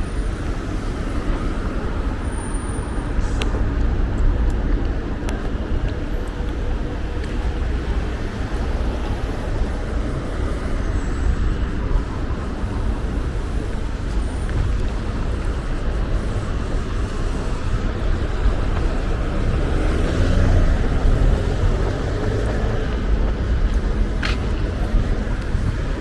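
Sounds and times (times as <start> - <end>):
cars driving past: 6.6 - 26.0.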